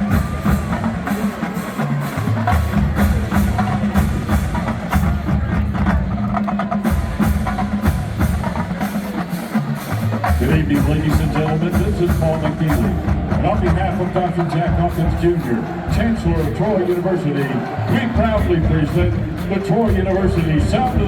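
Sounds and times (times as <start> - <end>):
rapid snare drum strikes: 0.0 - 21.0
pitched bass drum notes: 2.2 - 8.9, 10.2 - 17.0.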